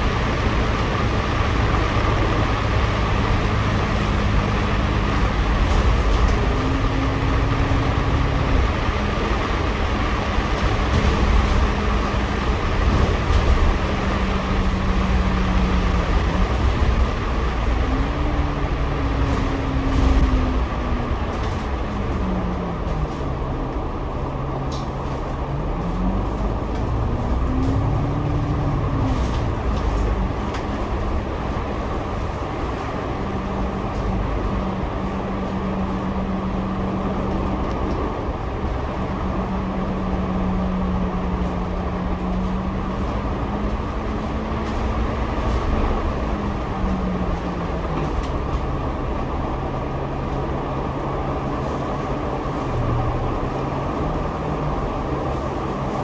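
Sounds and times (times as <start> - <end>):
bus engine humming: 0.0 - 56.0.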